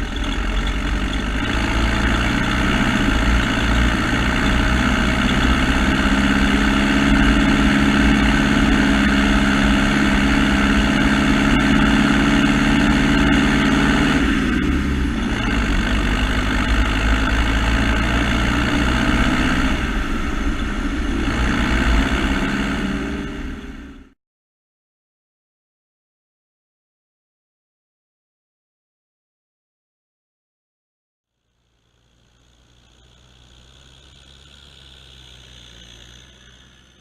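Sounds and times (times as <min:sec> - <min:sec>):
engine running: 0:00.0 - 0:24.2, 0:31.4 - 0:37.0.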